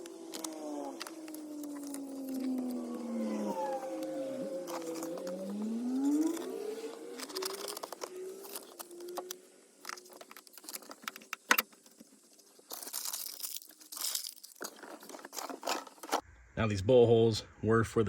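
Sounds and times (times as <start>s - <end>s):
sound-deadening mat crinkling: 9.9s - 16.2s.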